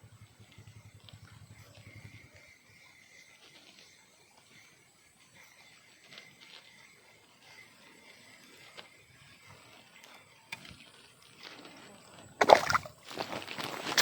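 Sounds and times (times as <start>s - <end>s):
water splashing and sloshing: 12.4s - 14.0s.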